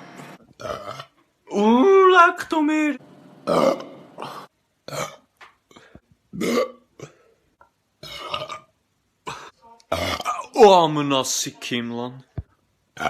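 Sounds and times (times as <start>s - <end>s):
person burping: 0.5s - 1.2s, 3.5s - 5.3s, 6.3s - 7.3s, 8.0s - 10.6s.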